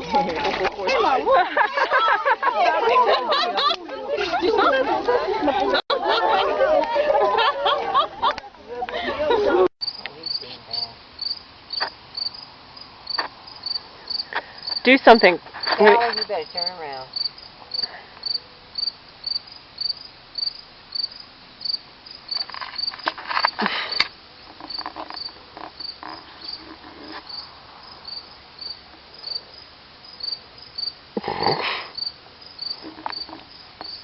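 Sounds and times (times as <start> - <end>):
insect chirping: 9.8 - 34.0.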